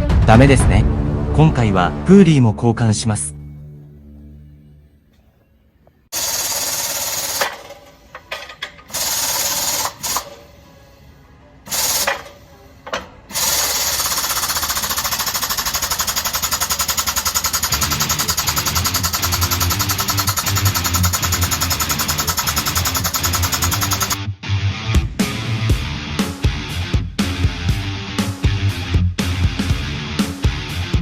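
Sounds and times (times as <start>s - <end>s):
impact wrench rattling: 6.1s - 10.5s, 11.7s - 24.2s.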